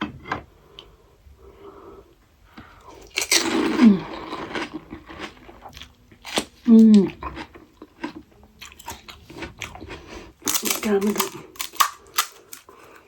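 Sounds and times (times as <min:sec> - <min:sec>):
crunching and chewing: 0:02.7 - 0:13.0.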